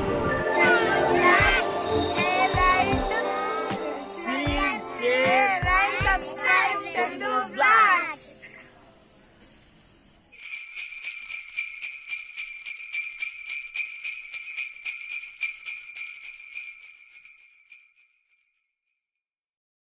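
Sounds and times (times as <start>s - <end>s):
jingle bells shaken: 10.4s - 18.7s.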